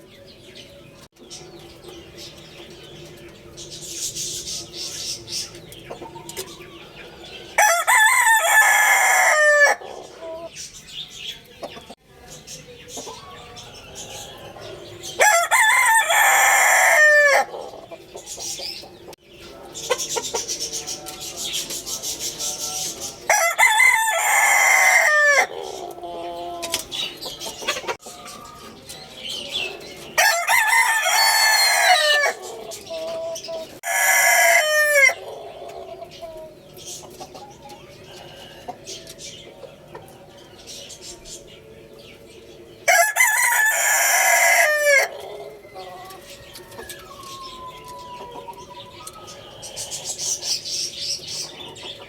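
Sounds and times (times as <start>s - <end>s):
rooster crowing: 7.5s - 10.5s, 14.6s - 17.7s, 23.3s - 26.5s, 30.2s - 32.6s, 33.8s - 35.3s, 42.9s - 48.5s
quiet clucking: 11.3s - 12.0s.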